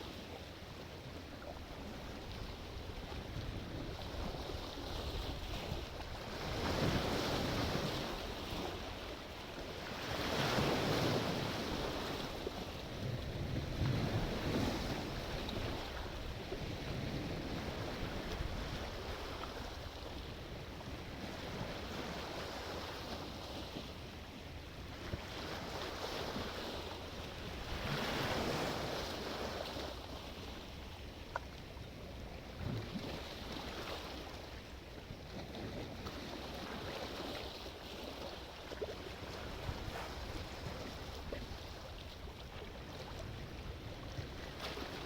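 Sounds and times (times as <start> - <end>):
sea waves breaking: 1.4 - 24.0, 25.0 - 31.5.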